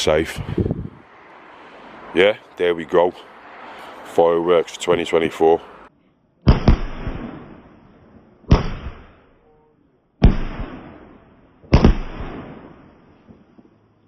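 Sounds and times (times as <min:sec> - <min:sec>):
fireworks exploding: 0:06.5 - 0:07.8, 0:10.2 - 0:13.7.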